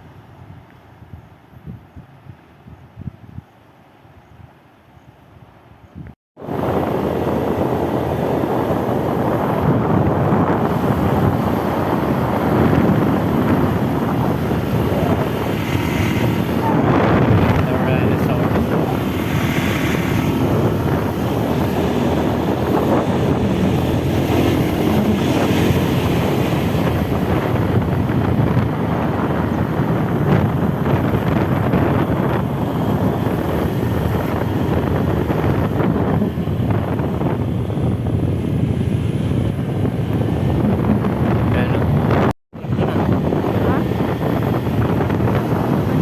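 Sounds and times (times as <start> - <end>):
wind buffeting microphone: 0.0 - 46.0.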